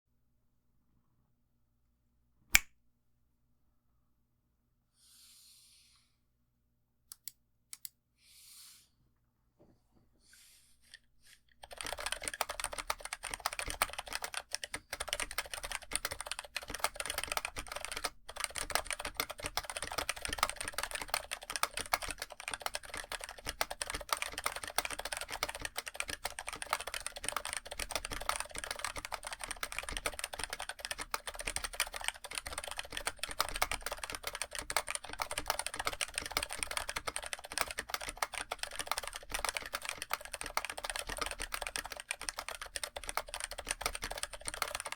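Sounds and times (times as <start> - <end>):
mechanical keyboard typing: 7.1 - 7.9, 11.6 - 44.9.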